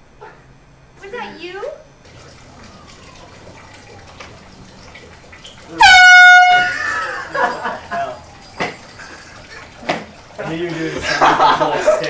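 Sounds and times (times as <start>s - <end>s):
air horn blast: 5.7s - 7.1s.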